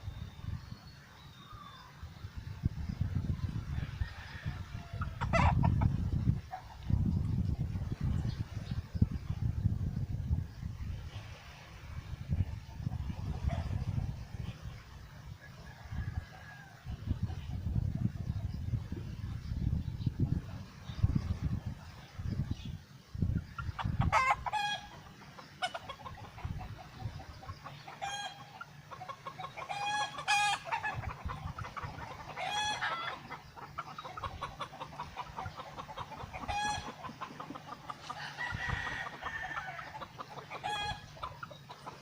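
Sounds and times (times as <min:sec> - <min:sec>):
bird calling: 0:00.0 - 0:02.2.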